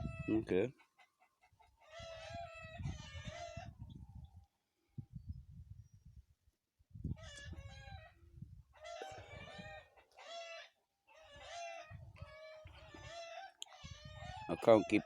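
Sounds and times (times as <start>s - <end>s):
cockerels crowing: 8.8s - 15.0s.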